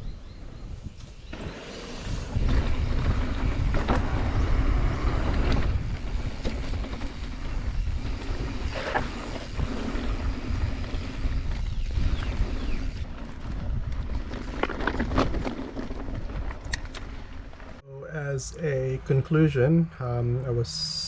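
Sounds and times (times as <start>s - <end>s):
bicycle road rumble: 0.0s - 17.8s
wind buffeting microphone: 0.0s - 17.8s.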